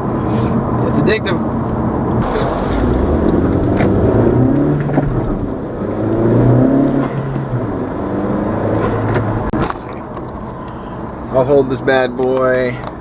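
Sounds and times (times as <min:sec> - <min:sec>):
car engine pulling under throttle: 0:00.0 - 0:13.0
engine air intake breathing: 0:02.2 - 0:05.6, 0:06.8 - 0:07.7, 0:10.4 - 0:11.3.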